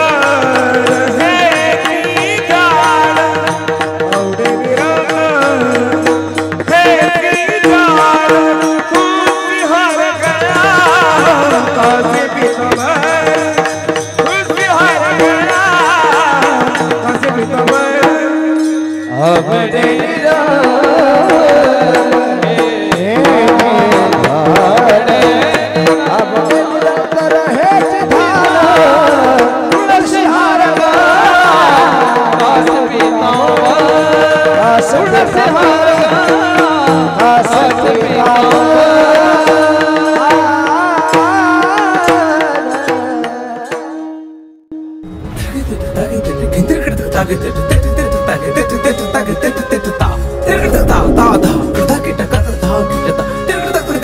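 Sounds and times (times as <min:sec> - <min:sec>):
man singing devotional verse: 0:00.0 - 0:44.1, 0:45.4 - 0:54.0
steady held drone notes: 0:50.2 - 0:52.9.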